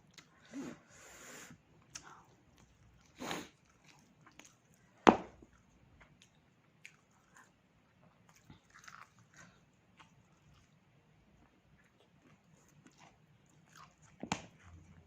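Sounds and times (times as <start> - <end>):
person chewing: 1.8 - 4.8, 5.4 - 10.8, 11.8 - 14.9.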